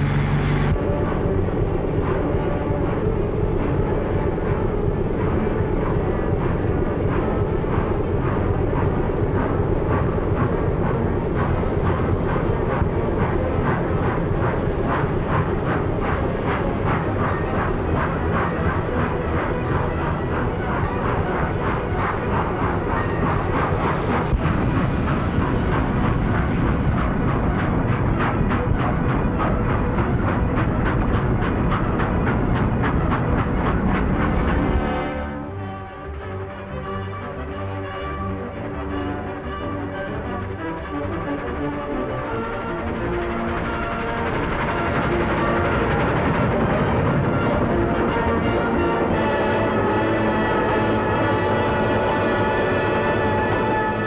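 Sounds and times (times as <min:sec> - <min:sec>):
train rumbling: 0:00.0 - 0:54.0.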